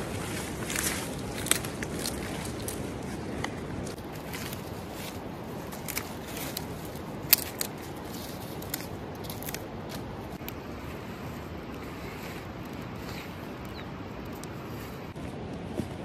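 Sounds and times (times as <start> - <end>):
dry grass stalks crackling: 0.0 - 16.0.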